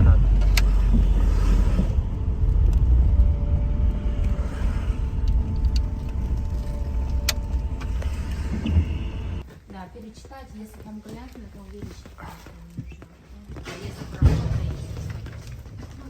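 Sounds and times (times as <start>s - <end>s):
faint steady whine: 0.0s - 9.4s
van engine and road rumble: 0.0s - 9.5s.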